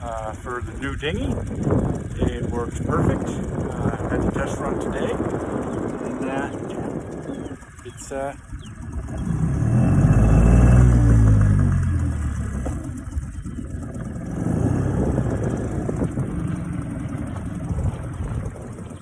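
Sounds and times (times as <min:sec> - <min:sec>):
outboard motor running: 0:00.0 - 0:19.0.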